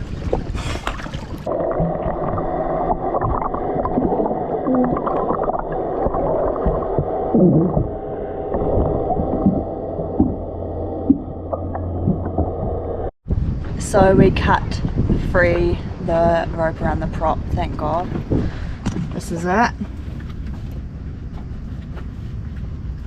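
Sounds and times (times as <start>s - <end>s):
water gurgling underwater: 0.0s - 13.1s
steady low hum: 0.0s - 23.0s.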